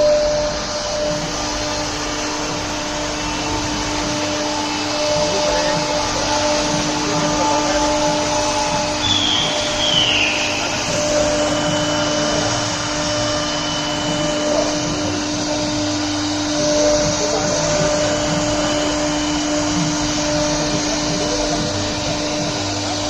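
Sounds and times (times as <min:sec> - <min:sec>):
router spindle cutting wood: 0:00.0 - 0:23.0.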